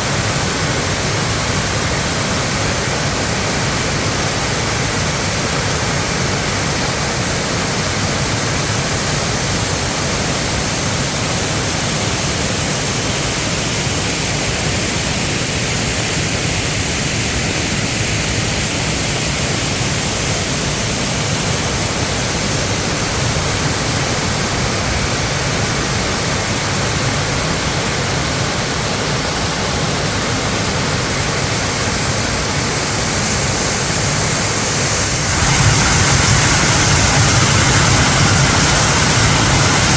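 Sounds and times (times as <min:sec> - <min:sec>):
stream rushing: 0:00.0 - 0:39.9.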